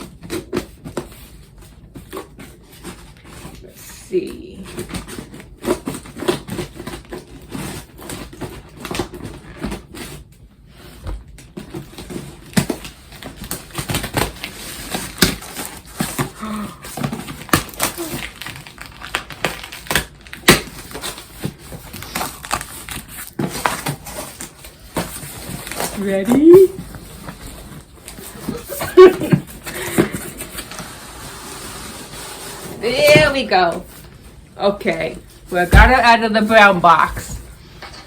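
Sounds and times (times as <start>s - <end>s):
cardboard scraping: 4.4s - 37.8s
packing material crinkling: 11.6s - 36.6s.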